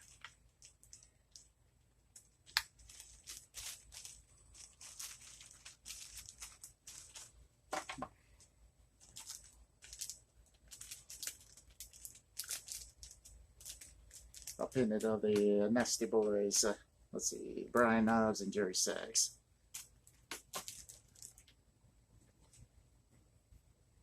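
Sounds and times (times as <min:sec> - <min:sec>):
packaging crinkling: 0:00.0 - 0:01.5, 0:02.2 - 0:16.7, 0:19.7 - 0:21.5.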